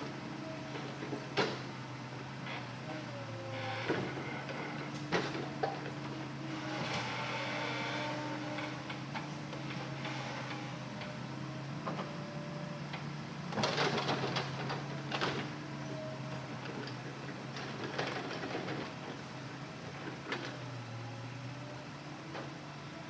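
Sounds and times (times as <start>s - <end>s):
excavator diesel engine humming: 0.0s - 23.0s.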